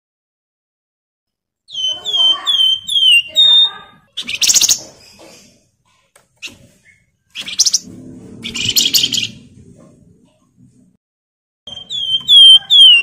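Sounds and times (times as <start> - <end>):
songbird chattering rattle: 1.8 - 5.6.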